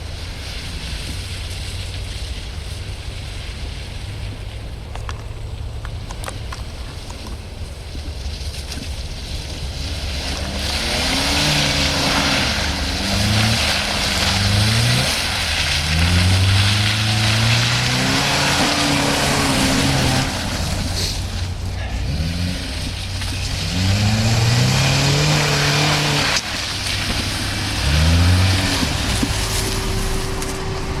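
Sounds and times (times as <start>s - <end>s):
steady rushing noise: 5.5s - 31.0s
car engine revving: 8.4s - 31.0s.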